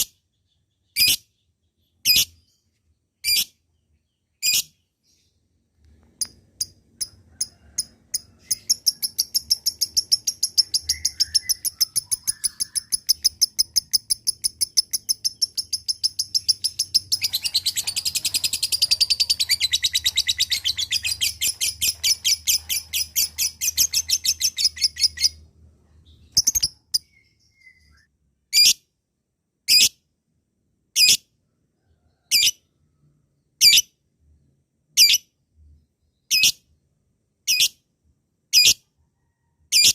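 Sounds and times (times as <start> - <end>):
lovebird shrill chirps: 4.4 - 4.7, 7.7 - 25.4, 26.2 - 28.8
fast run of bird calls: 17.0 - 25.2.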